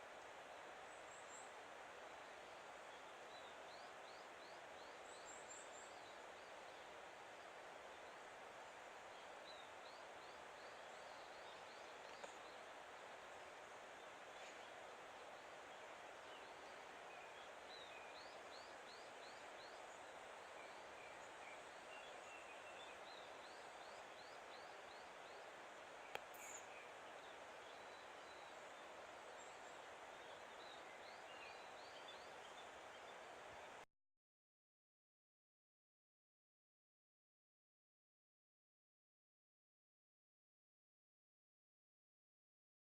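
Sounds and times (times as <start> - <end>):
steady hiss: 0.0 - 33.8
small birds chirping: 9.1 - 33.8.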